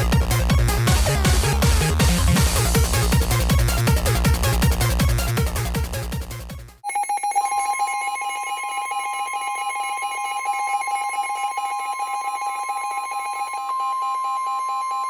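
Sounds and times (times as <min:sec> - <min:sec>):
electronic dance music: 0:00.0 - 0:06.8
two-pitch electronic alarm tone: 0:06.8 - 0:15.0.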